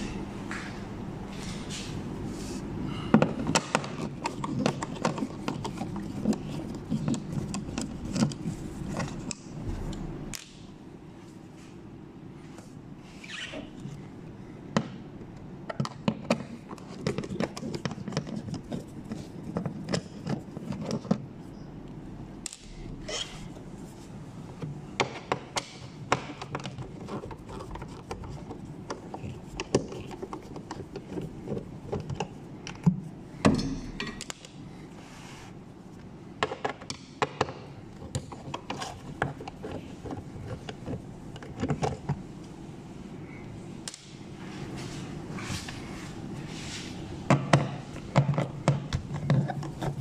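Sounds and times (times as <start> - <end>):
hands clicking and tapping car parts: 3.1 - 9.5, 24.6 - 34.6, 36.4 - 42.6, 47.3 - 50.0.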